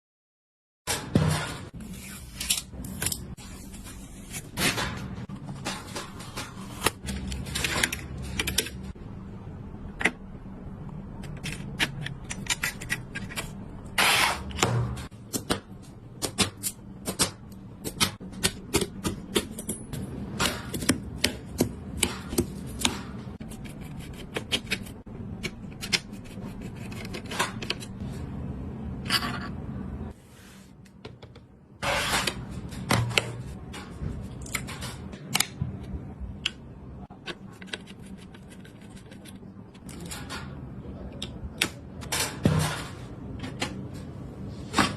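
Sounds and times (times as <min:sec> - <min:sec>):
steady low hum: 0:01.3 - 0:44.9
computer parts clicking and snapping: 0:05.6 - 0:09.0, 0:11.2 - 0:23.3, 0:32.2 - 0:36.6.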